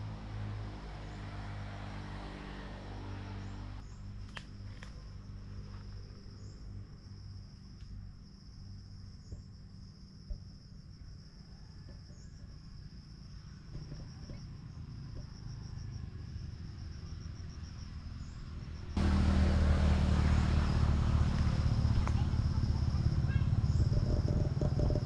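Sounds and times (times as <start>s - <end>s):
low rumble: 19.0s - 25.0s.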